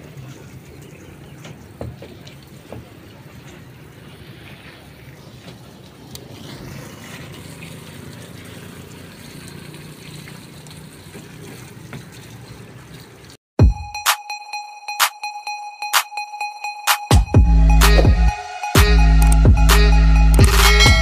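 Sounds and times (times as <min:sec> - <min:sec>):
water running: 0:00.0 - 0:13.4.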